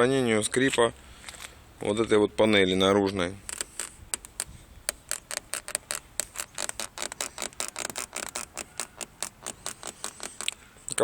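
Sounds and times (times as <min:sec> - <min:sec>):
car door panel creaking clicks: 0:03.4 - 0:11.0.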